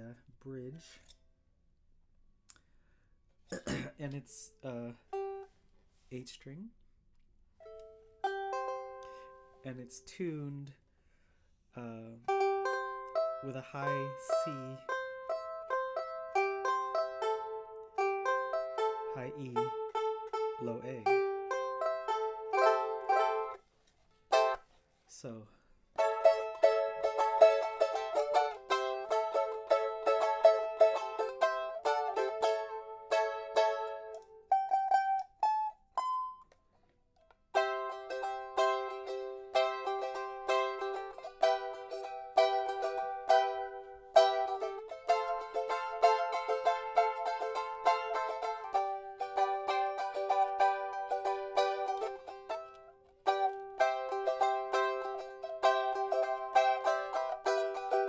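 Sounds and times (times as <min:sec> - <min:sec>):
ukulele strumming: 0:04.4 - 0:05.6, 0:07.6 - 0:10.6, 0:11.8 - 0:24.7, 0:26.0 - 0:58.0
plucked ukulele notes: 0:07.6 - 0:09.9, 0:12.1 - 0:23.6, 0:24.3 - 0:24.6, 0:26.0 - 0:36.6, 0:37.5 - 0:58.0.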